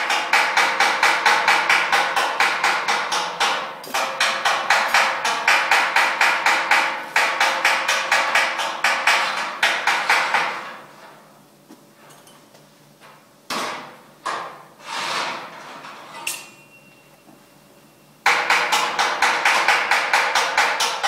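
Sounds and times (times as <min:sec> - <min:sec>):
hammering on steel: 0:00.0 - 0:10.8, 0:18.2 - 0:21.0
short scraping sounds: 0:14.8 - 0:16.3
ringing metal ping: 0:16.3 - 0:17.1.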